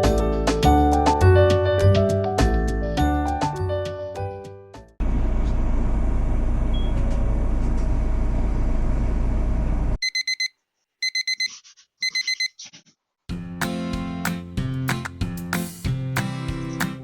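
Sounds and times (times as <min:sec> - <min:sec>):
alarm clock beeping: 0:10.0 - 0:12.6.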